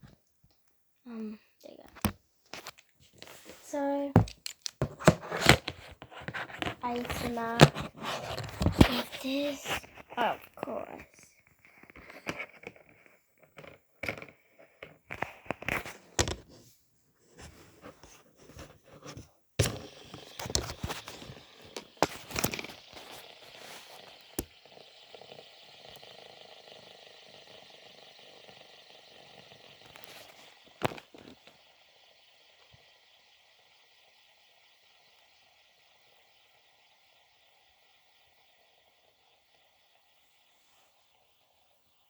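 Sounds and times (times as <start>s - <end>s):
plastic toy clicks and taps: 4.2s - 5.7s.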